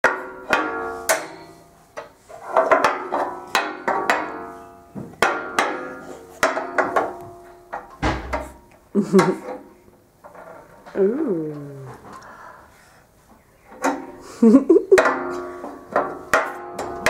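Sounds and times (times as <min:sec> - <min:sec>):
wooden ball striking metal radiator: 0:00.0 - 0:09.6, 0:14.8 - 0:17.0.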